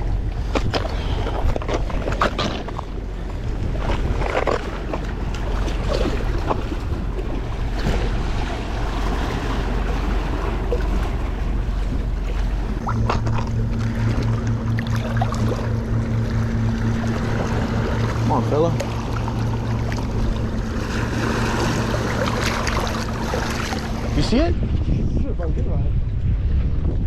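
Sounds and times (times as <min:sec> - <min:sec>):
boat motor humming: 0:00.0 - 0:27.0
wind buffeting microphone: 0:00.0 - 0:27.0
surf washing on rocks: 0:00.4 - 0:14.1, 0:16.8 - 0:24.6.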